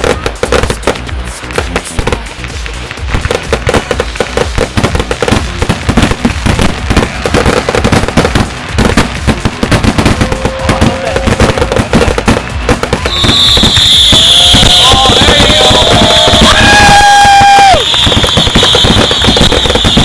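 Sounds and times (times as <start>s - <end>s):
fireworks bangs and crackles: 0.0s - 20.0s.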